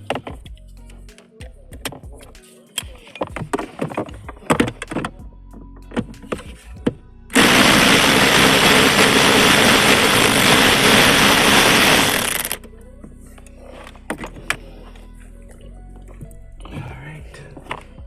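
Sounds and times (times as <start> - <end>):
power driver rattling: 7.4 - 12.6.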